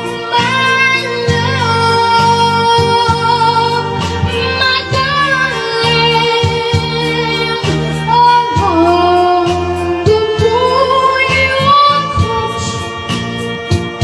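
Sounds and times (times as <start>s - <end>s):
high voice singing long notes: 0.0s - 9.5s.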